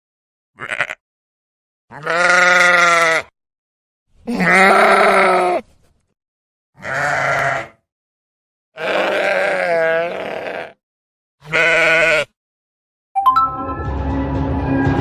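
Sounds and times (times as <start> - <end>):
sheep bleating: 0.6 - 1.0, 1.9 - 3.4, 4.2 - 5.6, 6.8 - 7.8, 8.8 - 10.8, 11.4 - 12.4.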